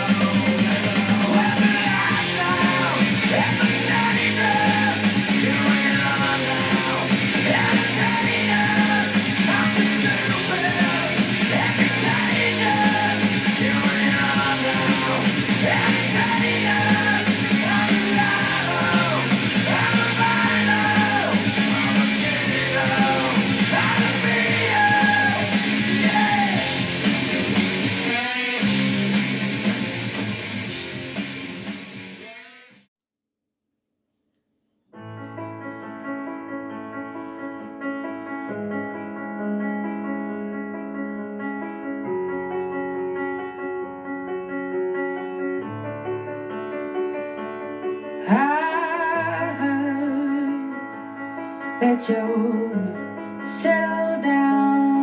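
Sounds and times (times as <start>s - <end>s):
rock song with vocals: 0.0s - 32.6s, 48.2s - 51.2s, 51.8s - 55.0s.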